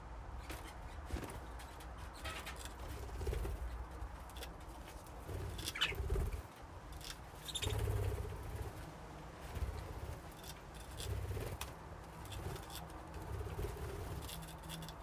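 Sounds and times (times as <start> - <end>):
birds thumping in cage: 0.3 - 15.0
wing flutters: 0.4 - 15.0
budgies chirping: 5.4 - 6.4, 7.4 - 8.6.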